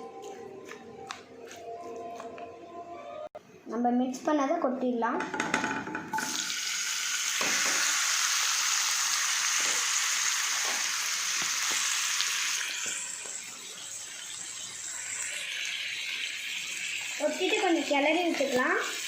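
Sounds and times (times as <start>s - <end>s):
spoon knocking against pot: 5.2s - 6.2s
chicken sizzling in hot oil: 6.1s - 19.0s.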